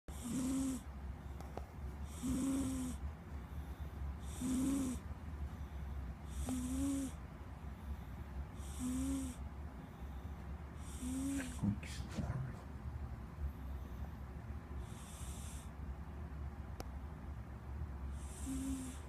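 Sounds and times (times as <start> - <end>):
cat snoring: 0.1 - 0.9, 2.0 - 3.0, 3.6 - 5.0, 5.6 - 7.2, 8.5 - 9.4, 10.8 - 12.0, 14.8 - 15.8, 18.1 - 19.0.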